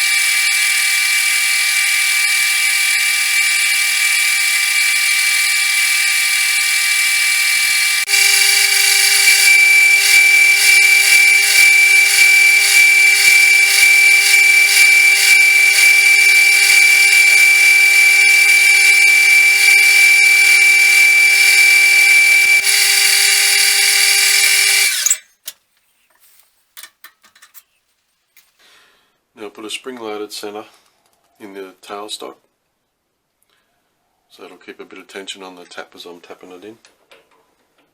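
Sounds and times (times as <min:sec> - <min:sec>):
metal lathe whine: 0:00.0 - 0:25.2.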